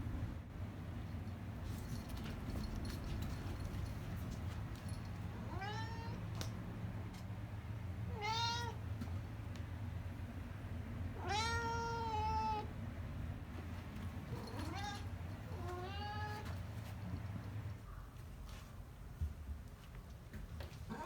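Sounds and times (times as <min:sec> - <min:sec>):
cat meowing: 0:05.4 - 0:06.2, 0:08.1 - 0:08.8, 0:11.2 - 0:12.7, 0:14.4 - 0:16.5.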